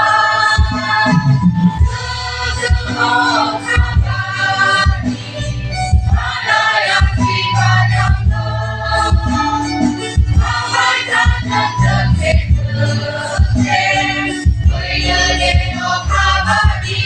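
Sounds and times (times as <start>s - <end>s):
choir singing: 0.0s - 9.7s, 10.4s - 17.0s
instrumental accompaniment: 0.0s - 16.8s
drum-like hits: 0.6s - 2.0s
sustained bass line: 0.6s - 6.3s, 11.8s - 16.9s.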